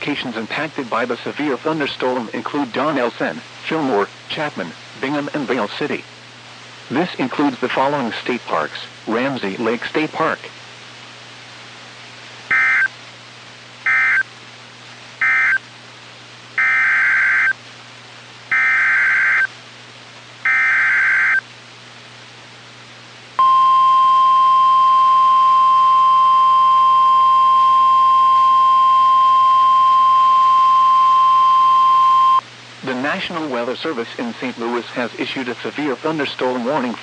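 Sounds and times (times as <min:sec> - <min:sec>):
data signal bursts: 0:12.5 - 0:12.9, 0:13.9 - 0:14.3, 0:15.2 - 0:15.6, 0:16.6 - 0:17.6, 0:18.5 - 0:19.5, 0:20.5 - 0:21.4, 0:23.4 - 0:32.4.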